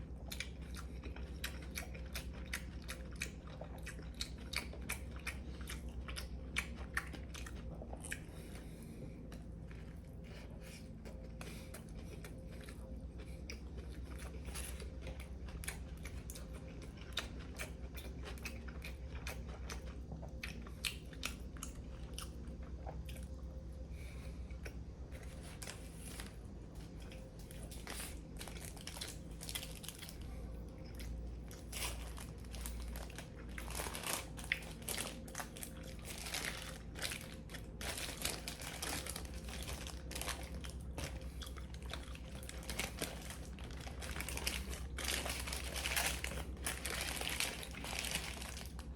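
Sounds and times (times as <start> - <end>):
crunchy chewing of bread: 0.0 - 48.9
steady low hum: 0.0 - 48.9.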